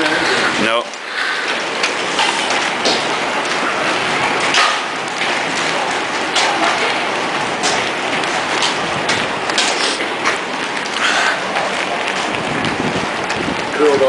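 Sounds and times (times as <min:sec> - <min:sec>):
storm wind and rain: 0:00.0 - 0:14.0.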